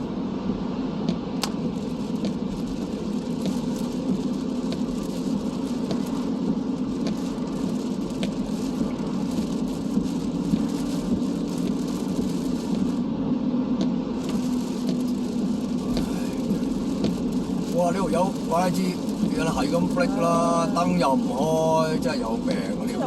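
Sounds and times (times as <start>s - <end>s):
car road and tyre noise: 0.0s - 23.0s.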